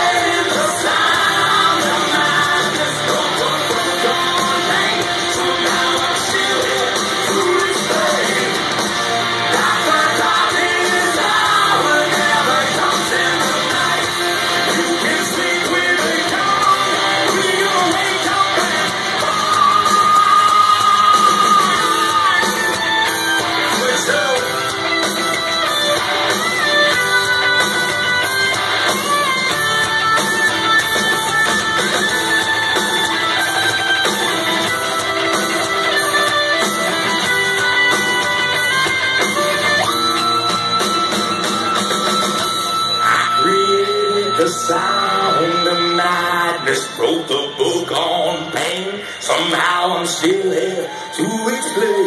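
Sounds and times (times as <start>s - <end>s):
drums: 0.0s - 52.0s
electric guitars: 0.0s - 52.0s
singer yelling: 9.5s - 24.7s, 43.0s - 52.0s.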